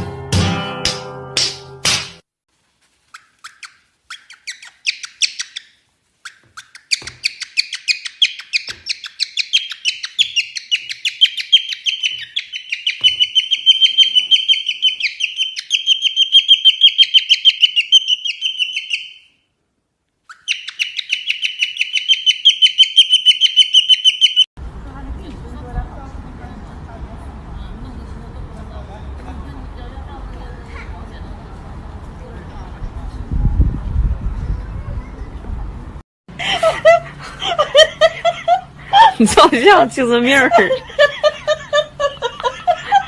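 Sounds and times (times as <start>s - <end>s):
small bird chirping rapidly: 3.0s - 19.4s, 20.2s - 24.5s.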